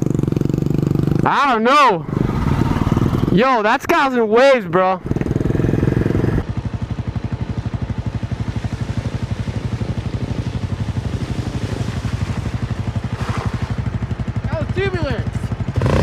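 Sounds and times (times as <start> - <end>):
motorcycle engine running: 0.0 - 3.7, 4.5 - 16.0.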